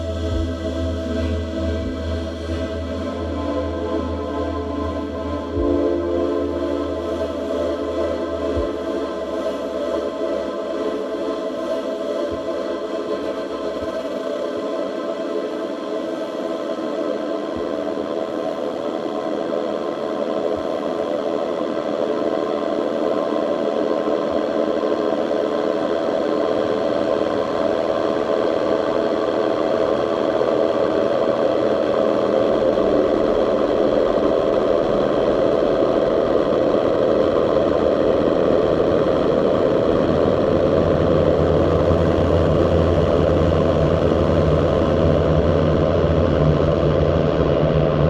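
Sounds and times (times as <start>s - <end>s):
low bass: 0.0s - 14.0s, 32.5s - 48.0s
droning synth texture: 0.0s - 22.6s, 26.3s - 48.0s.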